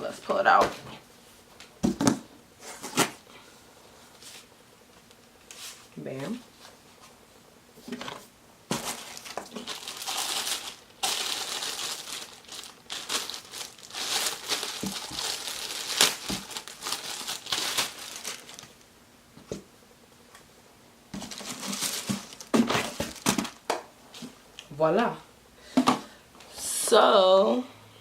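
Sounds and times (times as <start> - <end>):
packaging crinkling and rustling: 7.9 - 18.9, 21.1 - 24.3.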